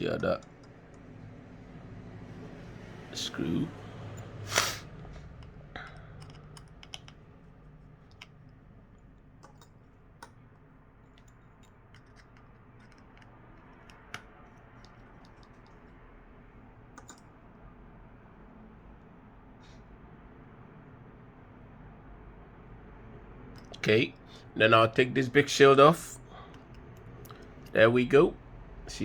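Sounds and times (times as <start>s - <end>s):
small repair tools clicking: 0.1s - 1.1s, 5.2s - 8.6s, 9.4s - 10.4s, 11.1s - 16.0s, 17.0s - 17.2s.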